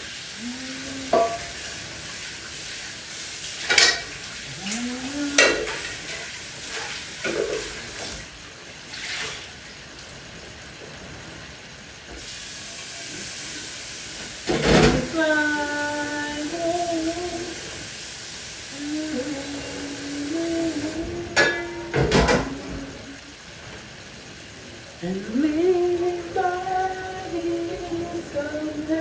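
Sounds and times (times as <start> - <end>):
steady hiss: 0.0 - 29.0
pots and utensils knocking: 1.1 - 1.7, 3.6 - 4.2, 5.3 - 6.3, 7.2 - 7.8, 21.3 - 23.0.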